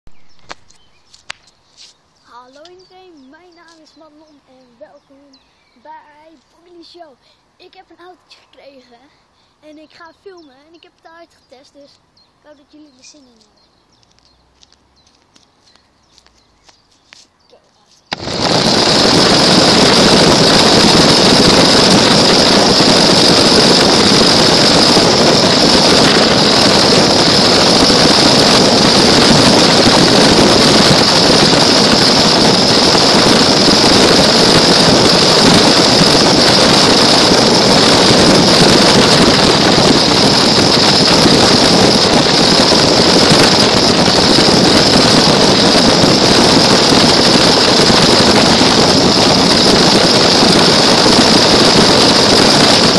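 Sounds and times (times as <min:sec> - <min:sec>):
toy car motor whirring: 0:18.1 - 0:52.9.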